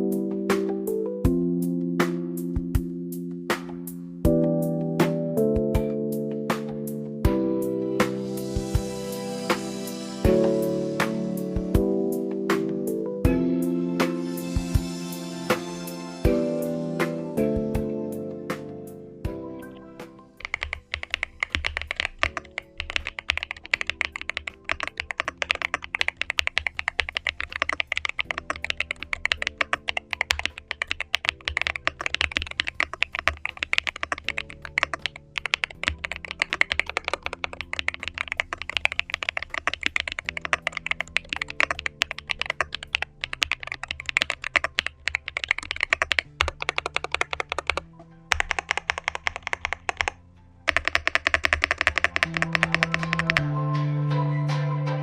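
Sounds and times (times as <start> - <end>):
background music: 0.0 - 55.0
mechanical keyboard typing: 20.4 - 53.5.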